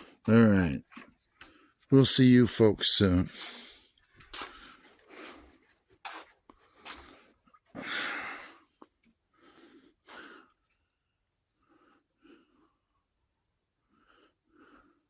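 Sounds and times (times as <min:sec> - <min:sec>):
breathy sniffs and snorts: 0:09.4 - 0:10.6.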